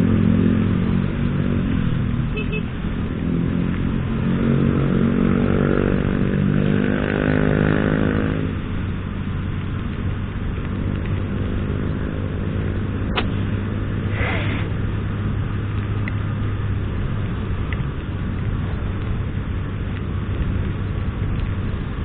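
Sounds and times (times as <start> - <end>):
motorcycle engine hum: 0.0 - 22.0
road noise: 0.0 - 22.0.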